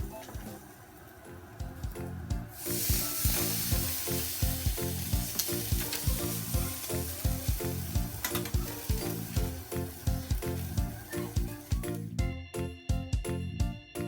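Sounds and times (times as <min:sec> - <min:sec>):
rhythmic background music: 0:00.0 - 0:00.7, 0:01.3 - 0:14.0
food sizzling in hot oil: 0:02.5 - 0:12.0.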